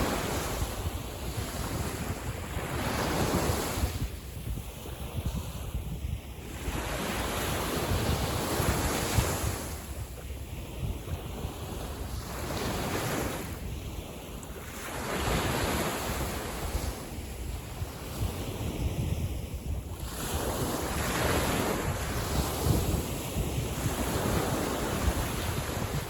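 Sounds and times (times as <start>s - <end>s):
wind rumbling on microphone: 0.0s - 26.0s
small sea waves breaking: 6.4s - 26.0s.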